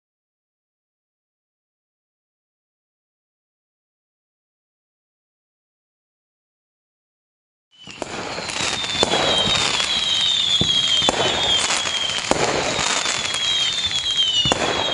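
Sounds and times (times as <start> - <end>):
fireworks whistles: 7.7 - 14.9
fireworks bangs and crackling: 7.8 - 14.9.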